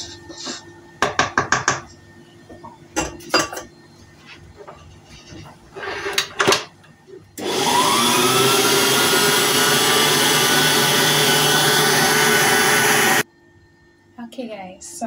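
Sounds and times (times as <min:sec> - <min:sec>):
stand mixer motor whining: 0:07.4 - 0:13.2.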